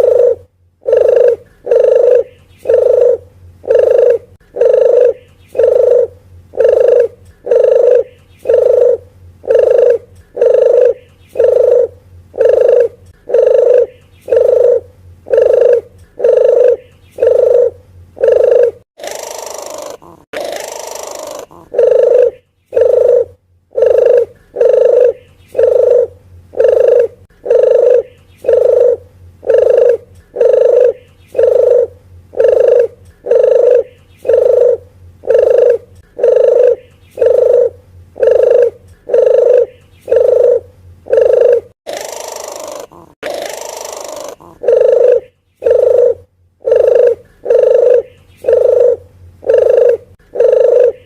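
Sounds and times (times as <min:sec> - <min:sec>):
dove cooing: 0:00.0 - 0:51.0
soft hoarse bird call: 0:00.0 - 0:51.0.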